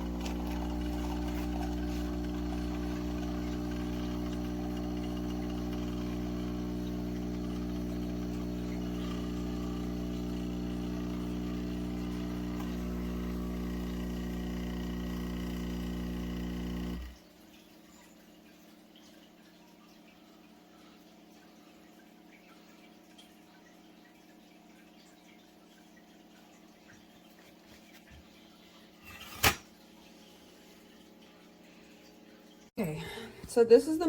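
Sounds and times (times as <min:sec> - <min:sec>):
espresso machine pump humming: 0:00.0 - 0:17.2.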